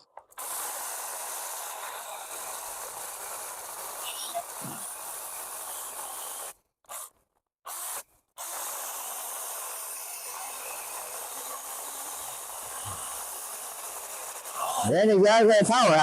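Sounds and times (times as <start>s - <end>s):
chainsaw cutting wood: 0.2s - 14.9s.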